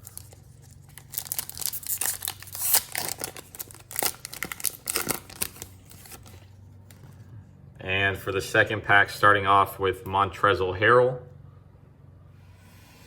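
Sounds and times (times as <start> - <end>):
foil wrapper crinkling and tearing: 0.0 - 6.6.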